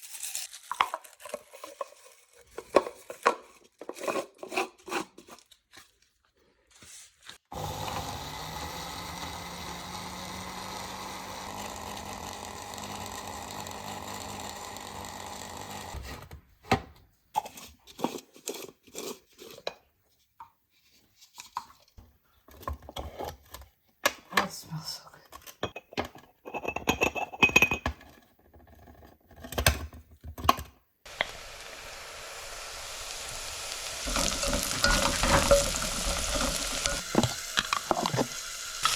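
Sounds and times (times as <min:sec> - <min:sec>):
electric blender running: 0:07.5 - 0:16.0, 0:31.1 - 0:38.9.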